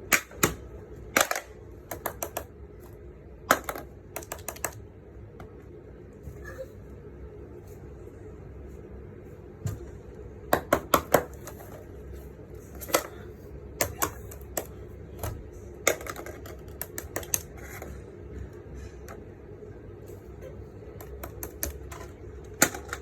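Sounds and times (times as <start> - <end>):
plastic fidget toys clicking: 15.9 - 17.7.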